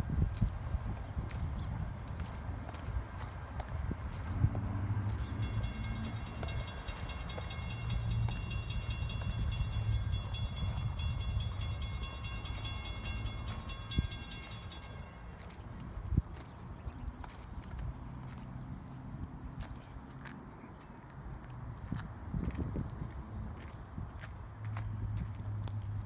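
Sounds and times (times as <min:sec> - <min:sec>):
train rolling past: 0:05.3 - 0:15.4.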